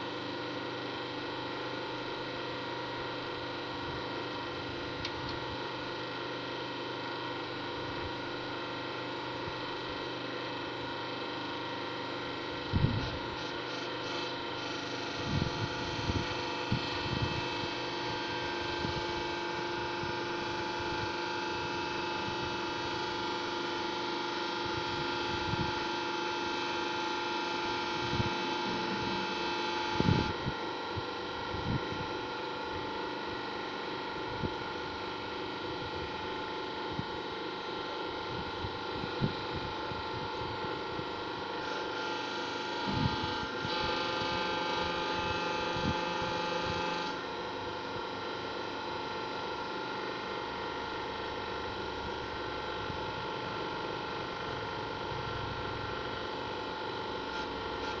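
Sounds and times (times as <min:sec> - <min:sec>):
steady machine hum: 0:00.0 - 0:58.0.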